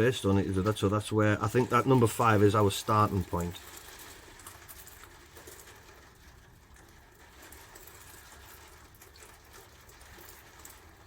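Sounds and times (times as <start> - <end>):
rain falling: 0.0 - 11.0.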